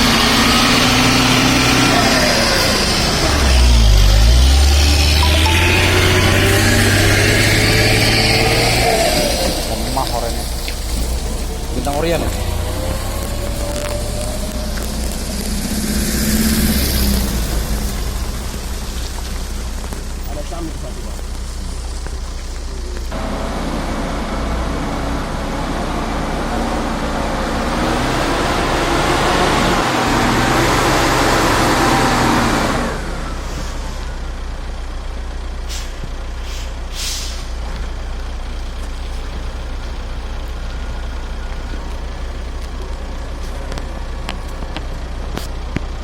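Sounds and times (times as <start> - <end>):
truck engine working hard: 0.0 - 46.0
short hissing bursts: 35.7 - 37.5.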